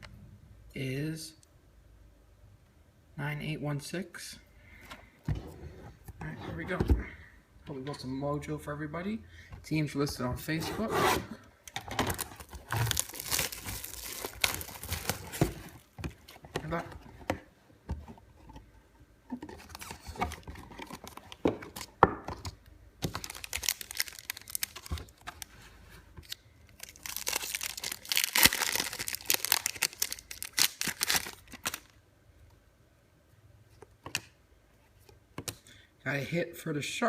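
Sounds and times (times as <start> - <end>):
wrapper tearing and crinkling: 12.1 - 15.8, 23.1 - 25.5, 26.2 - 31.9.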